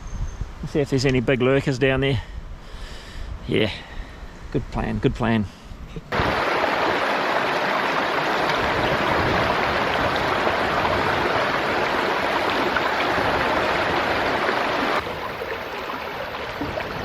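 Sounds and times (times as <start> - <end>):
stream water rushing: 6.1 - 17.0.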